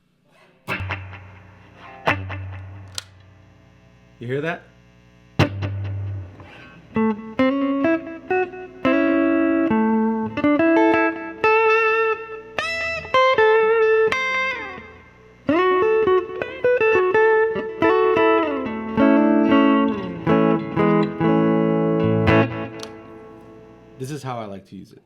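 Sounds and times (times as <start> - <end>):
electric guitar lead with delay: 5.4 - 24.0.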